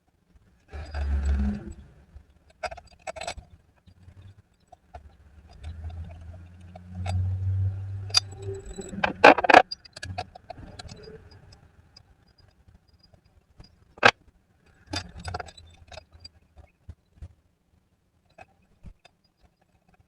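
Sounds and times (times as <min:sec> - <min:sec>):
low hum: 0:05.0 - 0:11.7.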